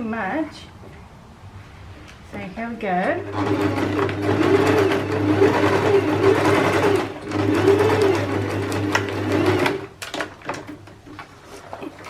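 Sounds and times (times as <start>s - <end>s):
sewing machine stitching: 3.1s - 10.8s.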